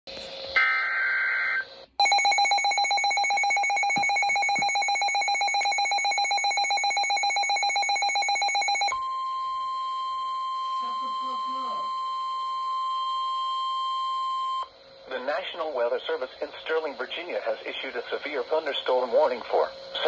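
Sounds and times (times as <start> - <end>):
steady high single tone: 0.5 - 15.1
data burst tones: 0.5 - 15.8.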